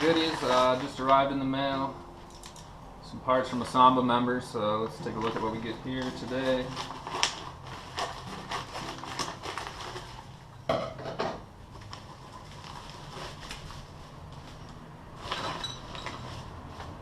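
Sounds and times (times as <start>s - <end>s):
metal parts clinking: 2.3s - 2.7s.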